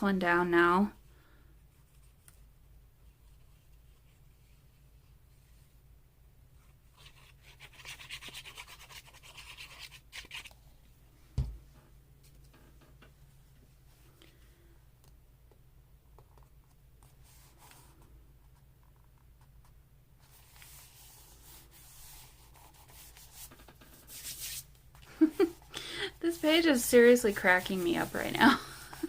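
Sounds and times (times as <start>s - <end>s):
fast rubbing on paper: 6.9s - 10.5s, 20.3s - 24.7s, 26.2s - 29.0s.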